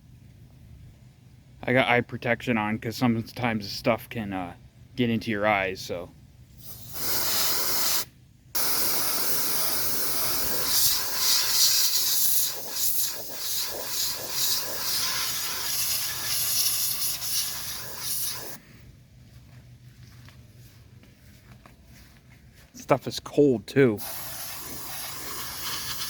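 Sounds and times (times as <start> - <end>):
compressed gas hissing: 6.6 - 18.7, 24.0 - 26.0.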